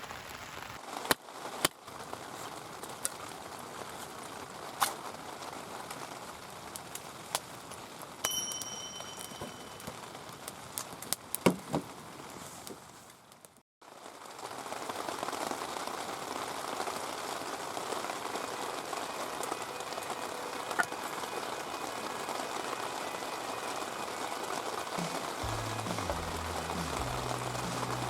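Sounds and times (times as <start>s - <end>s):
heavy rain pouring: 0.0s - 8.2s, 13.8s - 28.0s.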